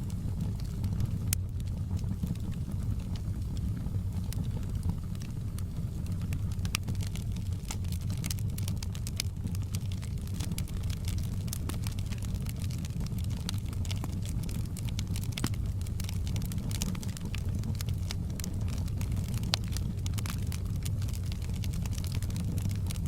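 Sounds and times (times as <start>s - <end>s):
fire crackles and pops: 0.0s - 23.0s
fire rumbling: 0.0s - 23.0s.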